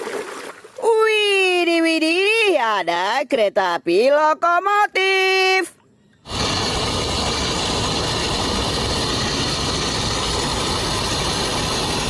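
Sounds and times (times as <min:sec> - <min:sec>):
rapid mechanical rattling clicks: 0:06.3 - 0:12.0.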